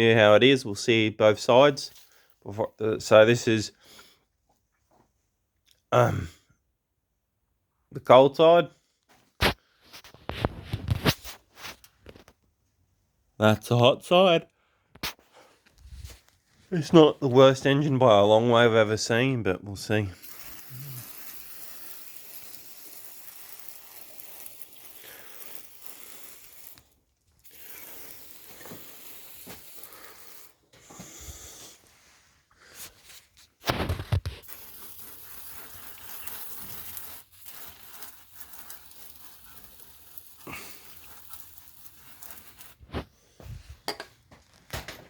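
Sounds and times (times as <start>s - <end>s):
aerosol spray hissing: 20.2s - 30.6s, 34.4s - 42.8s.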